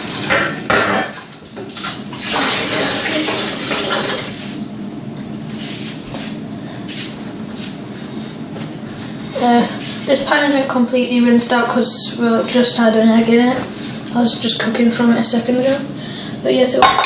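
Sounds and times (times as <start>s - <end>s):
tap water running into a pan: 1.4s - 4.4s
water splashing in a pan: 1.8s - 4.4s.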